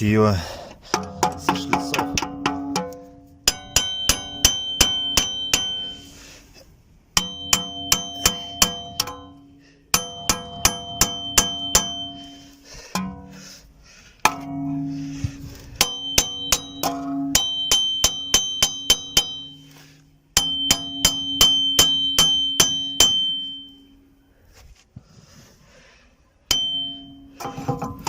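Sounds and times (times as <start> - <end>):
hammer striking steel wheel hub: 0.9 - 6.2, 7.1 - 13.4, 14.2 - 24.0, 26.5 - 28.0.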